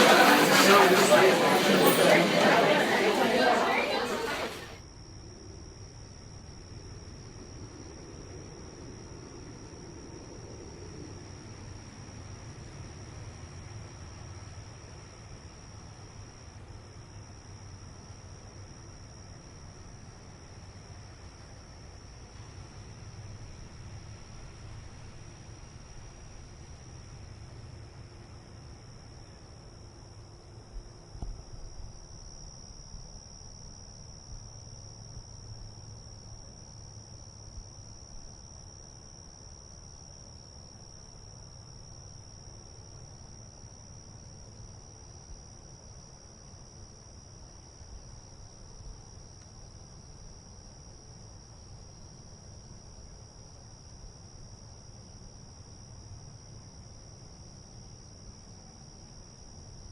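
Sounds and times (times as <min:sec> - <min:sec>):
insects chirring: 0:25.2 - 0:52.2.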